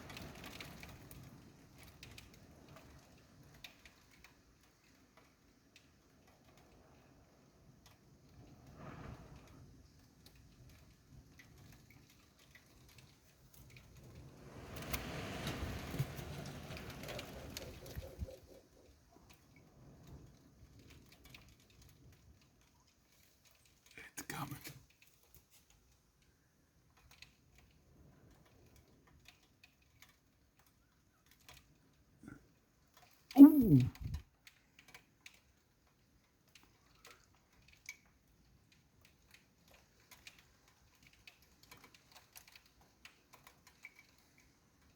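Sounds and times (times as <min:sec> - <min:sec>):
faint scattered clicks: 0:00.0 - 0:33.3, 0:34.0 - 0:44.9
wind: 0:00.0 - 0:44.9
rain rushing: 0:14.0 - 0:18.9.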